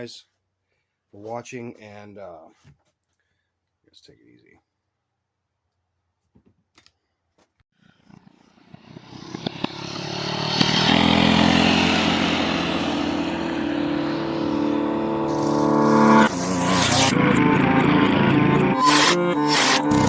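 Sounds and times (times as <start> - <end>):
vehicle engine approaching: 8.1 - 20.0.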